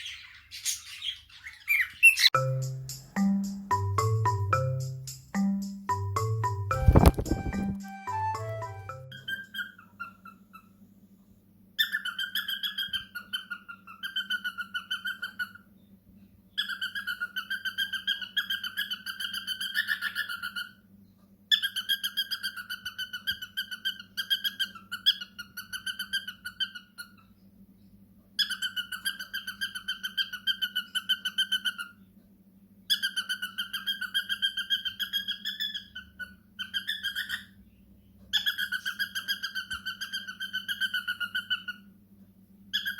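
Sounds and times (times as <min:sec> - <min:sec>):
parrot buzzy pulsed calls: 0:06.7 - 0:10.7.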